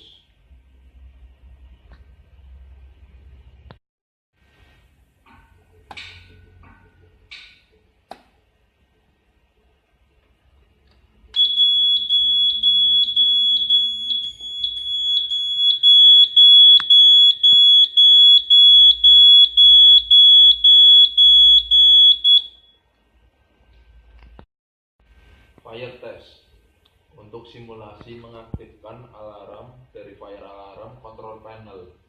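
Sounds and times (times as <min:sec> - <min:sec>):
piezo buzzer beeping rapidly: 0:11.4 - 0:22.6.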